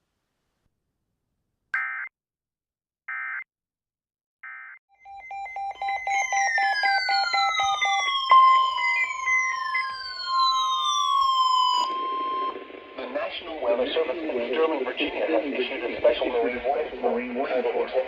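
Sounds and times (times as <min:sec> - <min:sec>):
two-pitch beeping: 0:04.5 - 0:13.0
screechy digital data bursts: 0:05.3 - 0:12.6
falling whistle-like sweeps: 0:05.3 - 0:13.0.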